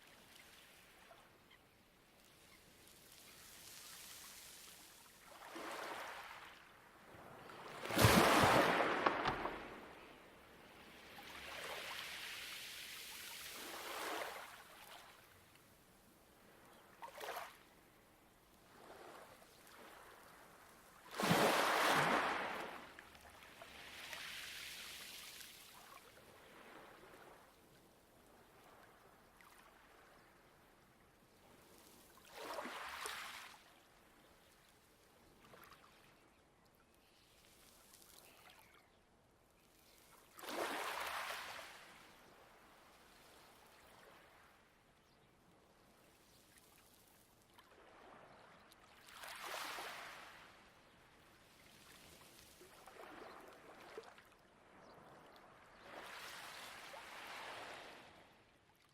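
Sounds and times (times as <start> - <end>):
waves washing onto pebbles: 7.7 - 10.0.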